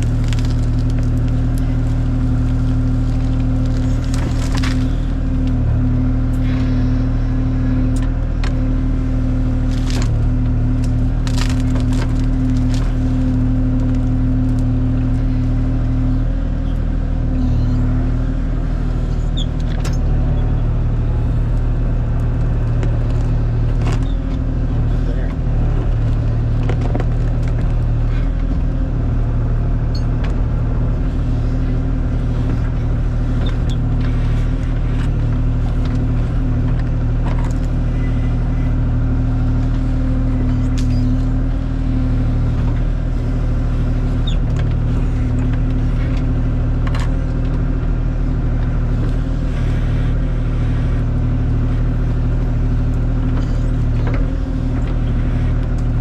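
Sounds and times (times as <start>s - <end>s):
sharp cracks and knocks: 0.0s - 5.5s, 9.6s - 14.7s
excavator diesel engine running: 0.0s - 56.0s.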